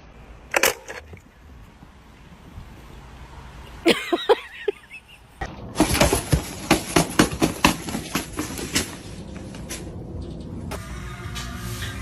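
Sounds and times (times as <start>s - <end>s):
knocks and clatters: 5.7s - 9.9s.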